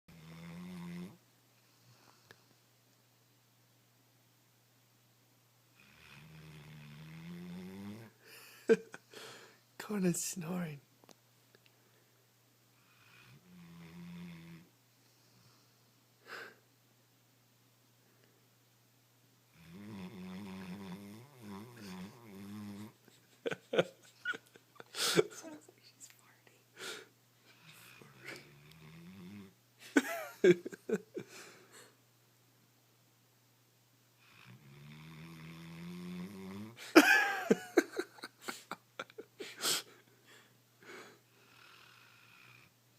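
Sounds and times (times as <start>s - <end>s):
dog snoring: 0.1s - 2.3s, 5.8s - 8.2s, 12.8s - 15.7s, 19.5s - 23.0s, 27.5s - 29.6s, 34.2s - 36.8s, 41.4s - 42.8s.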